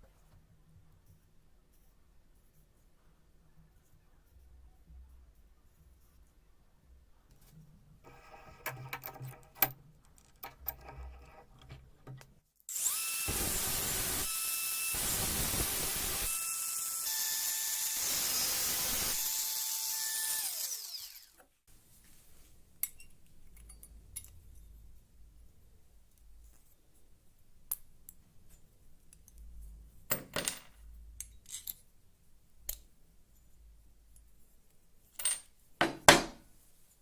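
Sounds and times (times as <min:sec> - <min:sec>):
power tool motor whine: 0:12.7 - 0:21.4.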